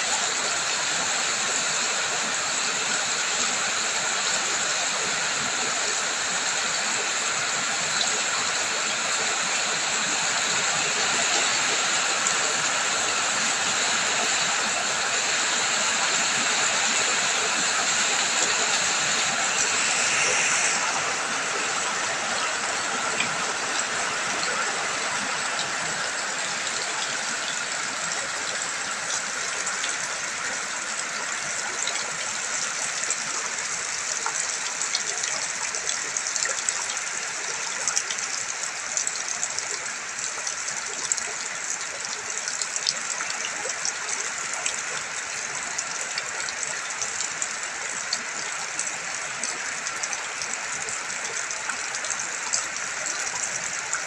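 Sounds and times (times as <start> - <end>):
running water: 0.0 - 54.0
steady rain: 0.0 - 54.0.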